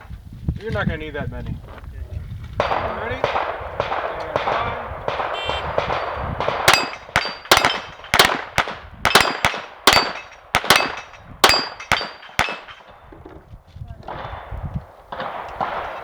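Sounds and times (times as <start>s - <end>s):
pistol shots: 2.6s - 13.0s, 14.1s - 16.0s.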